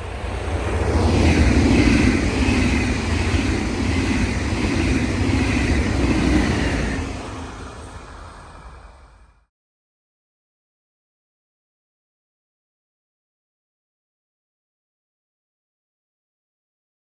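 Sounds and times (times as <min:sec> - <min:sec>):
train passing: 0:00.0 - 0:09.4.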